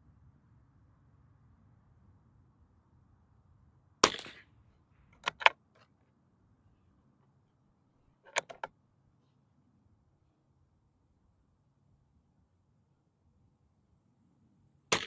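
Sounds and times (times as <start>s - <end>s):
rifle shot: 4.0s - 4.5s
sharp metallic clicks: 8.3s - 8.7s.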